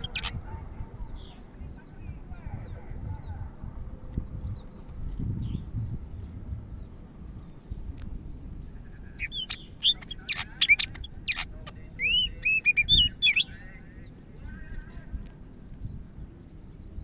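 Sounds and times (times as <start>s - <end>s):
bird singing whistled notes: 0.0s - 0.4s, 8.6s - 14.4s.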